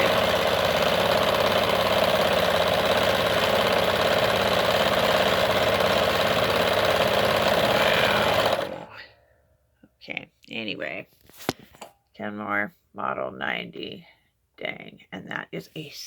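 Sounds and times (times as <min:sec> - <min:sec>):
sewing machine rattling: 0:00.0 - 0:08.9.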